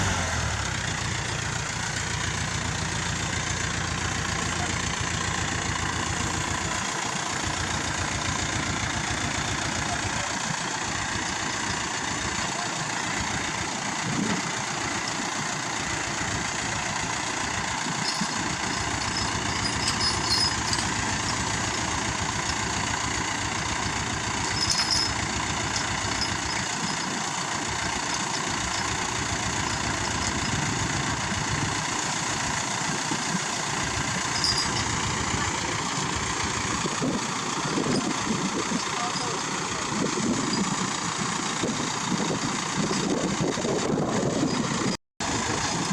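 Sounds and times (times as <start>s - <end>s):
diesel engine running: 0.0s - 45.9s
metallic clinks or squeaks: 17.8s - 31.2s, 33.1s - 35.8s, 37.0s - 40.8s, 41.8s - 45.0s.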